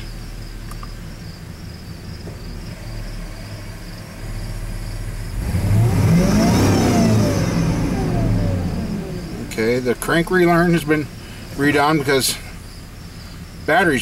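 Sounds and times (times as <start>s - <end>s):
truck engine idling and revving: 0.0s - 14.0s.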